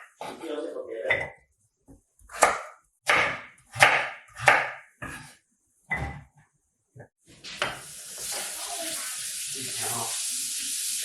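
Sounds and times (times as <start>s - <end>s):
knife chopping on cutting board: 2.2s - 6.3s.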